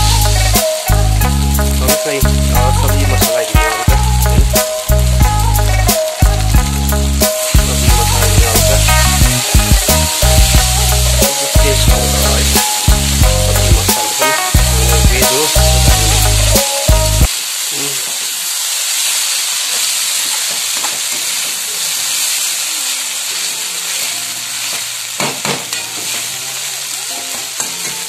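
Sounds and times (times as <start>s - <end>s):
music with heavy bass beat: 0.0s - 17.3s
food sizzling in a pan: 0.0s - 28.0s.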